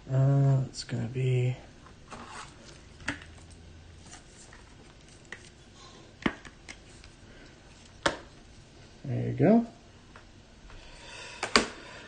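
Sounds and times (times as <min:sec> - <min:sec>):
cards and packaging handled: 0:02.0 - 0:08.3.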